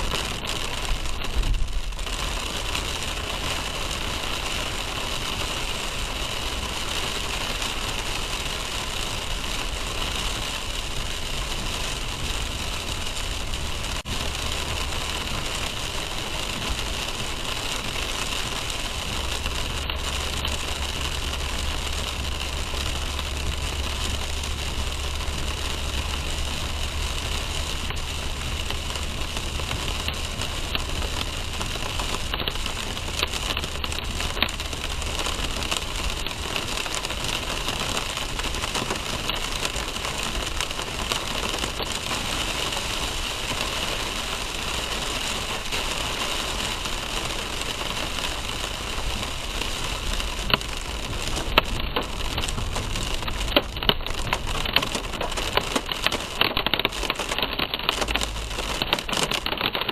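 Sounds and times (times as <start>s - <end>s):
rain hiss inside car: 0.0s - 59.9s.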